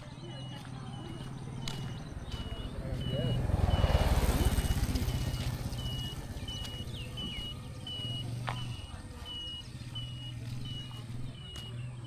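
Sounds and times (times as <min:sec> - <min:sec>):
low rumble: 0:00.7 - 0:10.2.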